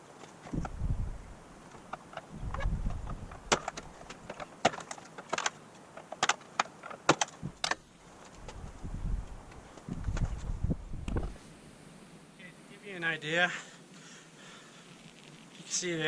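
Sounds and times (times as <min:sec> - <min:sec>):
hand tools and plastic clips clacking: 0:01.7 - 0:08.6.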